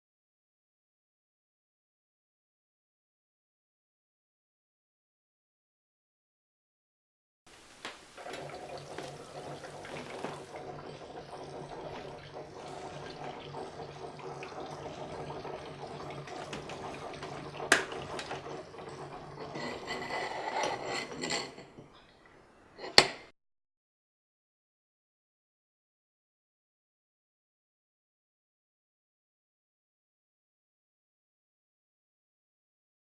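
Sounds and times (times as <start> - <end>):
water running from machine: 7.5 - 22.4.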